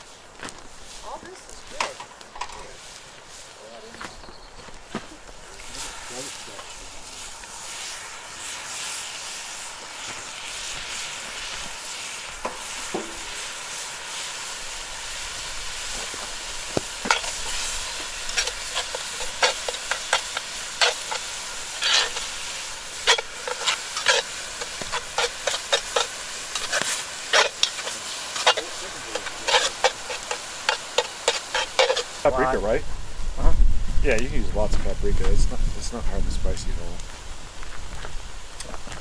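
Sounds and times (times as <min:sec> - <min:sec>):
food sizzling in a pot: 0:00.0 - 0:39.0
utensil scraping a pot: 0:15.8 - 0:32.6.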